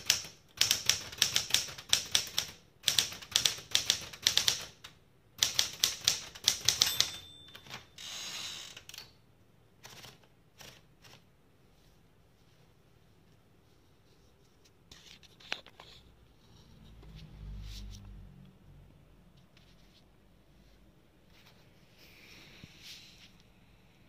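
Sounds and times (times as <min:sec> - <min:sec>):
typewriter key strikes: 0:05.4 - 0:07.9
typewriter margin bell: 0:05.5 - 0:08.1.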